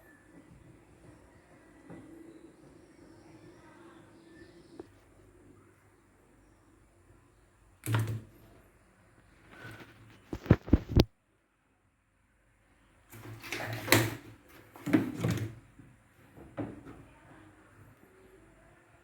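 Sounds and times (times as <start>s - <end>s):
clattering handling noise: 13.1s - 15.7s.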